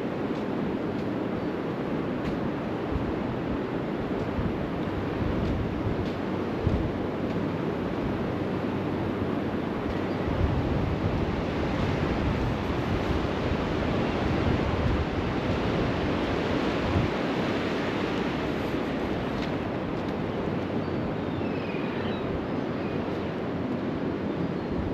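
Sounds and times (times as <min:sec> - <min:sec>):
wind buffeting microphone: 0:00.0 - 0:21.2
sea waves washing onto beach: 0:11.0 - 0:20.8.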